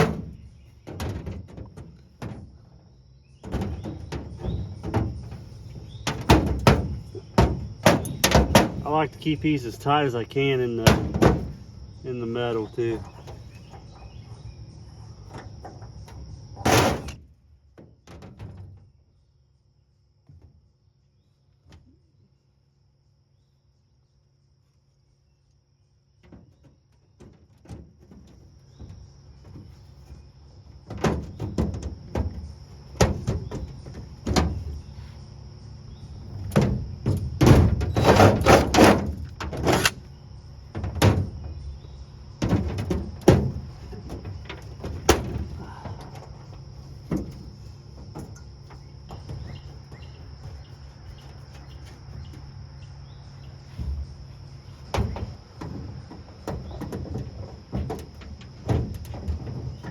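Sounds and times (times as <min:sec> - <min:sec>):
metallic knocks on sheet metal: 0:06.0 - 0:08.8.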